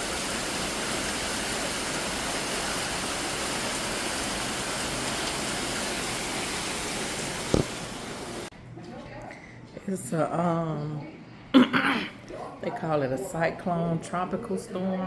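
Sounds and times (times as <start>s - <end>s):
heavy rain pouring: 0.0s - 8.5s
short thump: 7.5s - 7.8s.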